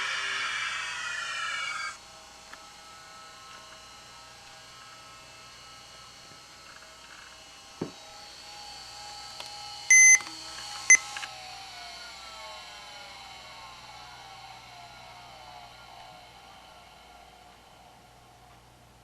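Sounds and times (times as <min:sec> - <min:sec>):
laptop faint whine: 0:00.0 - 0:19.0
electronic beeps: 0:09.9 - 0:10.2.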